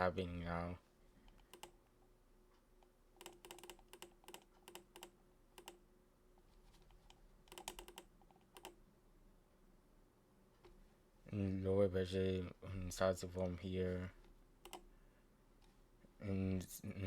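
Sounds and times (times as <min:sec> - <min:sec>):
typing on computer keyboard: 0:01.3 - 0:01.8, 0:03.2 - 0:05.8, 0:07.0 - 0:08.8, 0:14.6 - 0:14.9.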